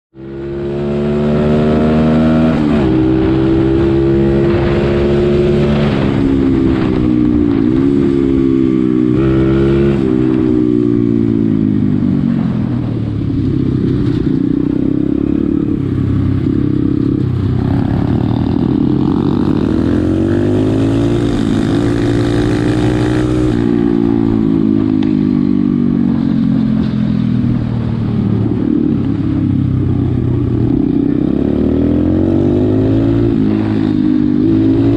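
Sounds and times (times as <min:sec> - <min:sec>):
pit bike engine revving: 0:14.0 - 0:24.3.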